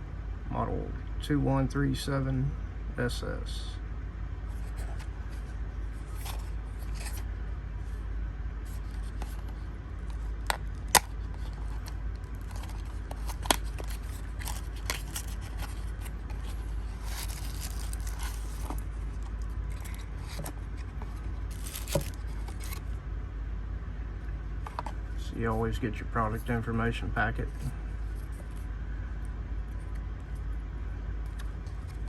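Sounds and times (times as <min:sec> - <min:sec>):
cardboard box clicks and scrapes: 0:04.6 - 0:07.3, 0:08.7 - 0:22.8.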